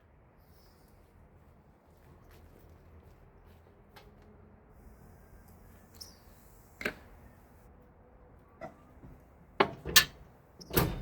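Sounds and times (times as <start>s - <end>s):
tools knocking and clanking: 8.6s - 11.0s.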